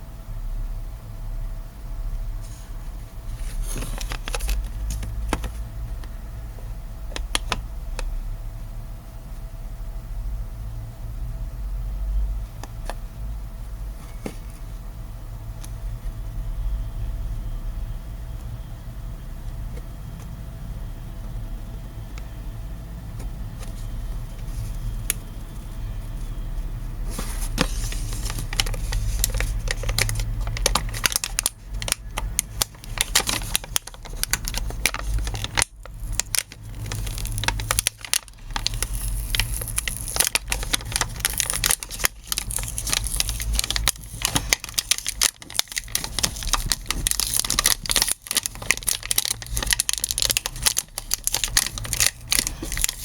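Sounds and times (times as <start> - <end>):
low steady hum: 0.0 - 53.0
packaging crinkling and tearing: 3.3 - 5.7, 7.1 - 7.6, 27.0 - 53.0.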